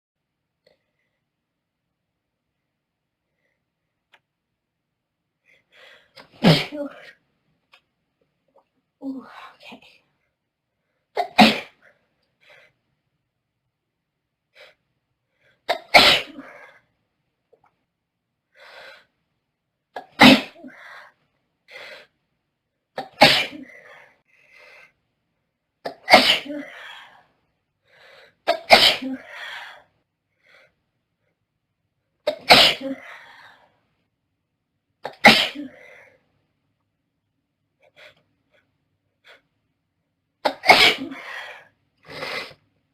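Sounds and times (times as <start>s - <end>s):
girl breathing: 5.4s - 6.2s, 26.7s - 28.4s
girl sneezing: 6.4s - 7.0s, 15.7s - 16.5s, 23.0s - 23.7s, 25.9s - 26.8s, 28.5s - 29.3s, 32.3s - 33.1s, 35.1s - 35.9s, 40.4s - 41.5s.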